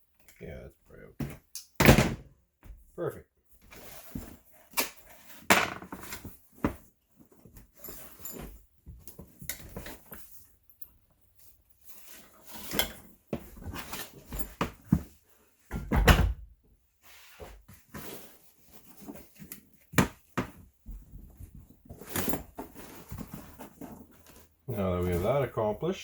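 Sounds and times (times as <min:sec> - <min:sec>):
tool belt handling noises: 0:03.7 - 0:15.4, 0:17.8 - 0:25.4.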